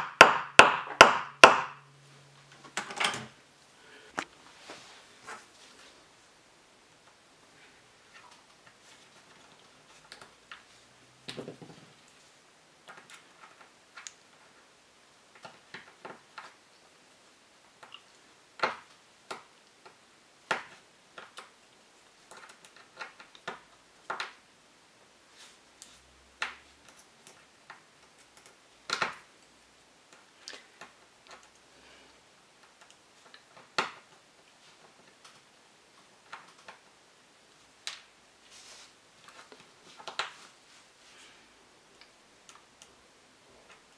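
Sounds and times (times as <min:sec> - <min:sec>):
sharp knocks: 0:00.0 - 0:01.8.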